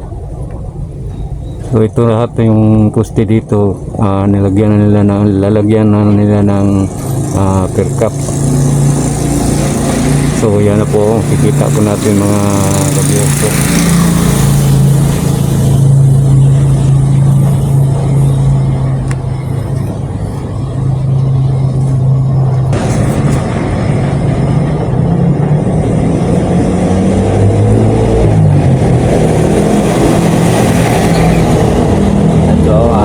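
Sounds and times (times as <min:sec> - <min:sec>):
vehicle engine revving: 0:01.6 - 0:33.0.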